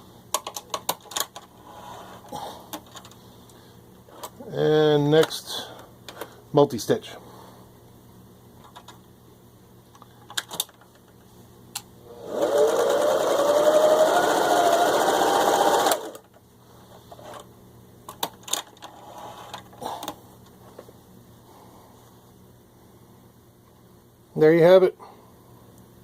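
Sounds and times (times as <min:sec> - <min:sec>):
sewing machine motor whining: 0:12.1 - 0:16.2.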